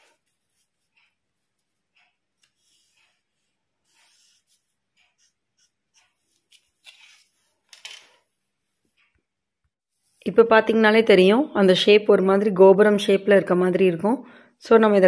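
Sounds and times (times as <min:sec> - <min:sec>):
pen scratching on paper: 0:02.4 - 0:07.4.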